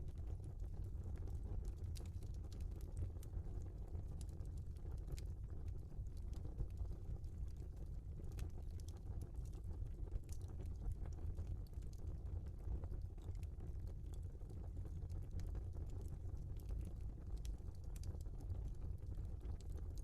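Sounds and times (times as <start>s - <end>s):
low fire rumble: 0.0s - 20.0s
wood fire crackling: 4.1s - 20.0s.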